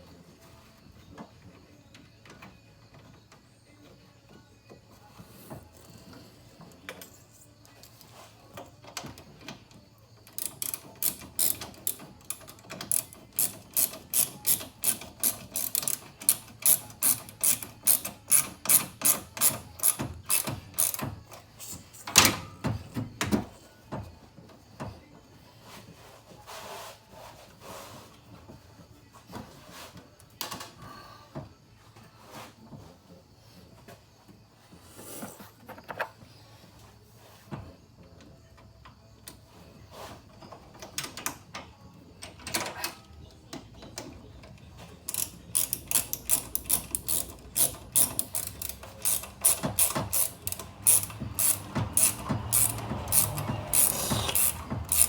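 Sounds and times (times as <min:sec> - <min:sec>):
socket ratchet clicking: 0:10.3 - 0:21.0, 0:45.1 - 0:55.0.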